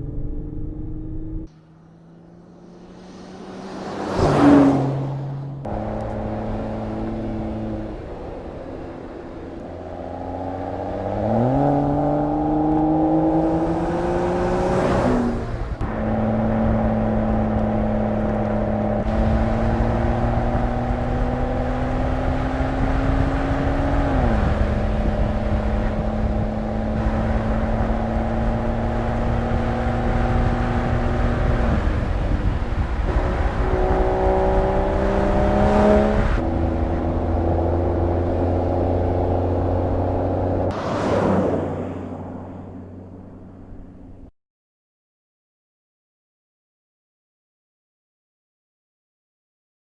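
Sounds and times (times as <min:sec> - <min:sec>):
road rumble: 0:00.0 - 0:44.3
car engine running: 0:05.4 - 0:14.7, 0:15.5 - 0:40.8.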